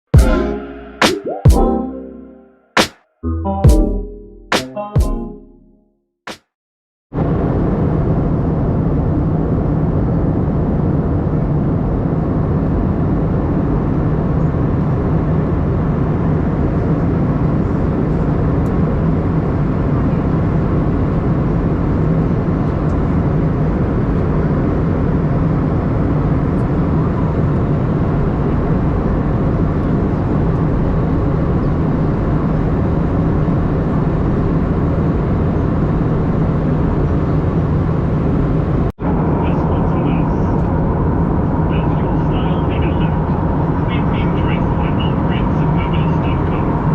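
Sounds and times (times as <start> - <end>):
jet engines and rushing air: 31.0 - 46.9.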